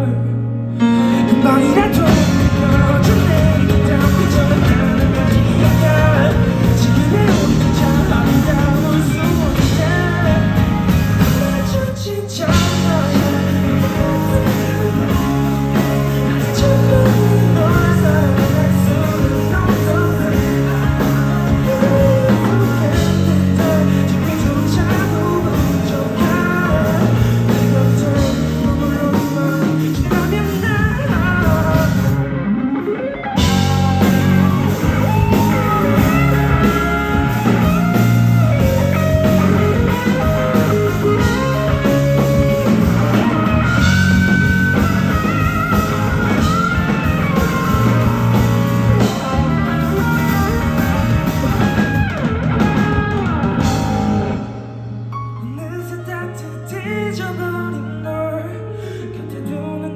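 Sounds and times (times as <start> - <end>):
rock band playing: 0.1 - 57.6
rising sweep: 31.9 - 55.2.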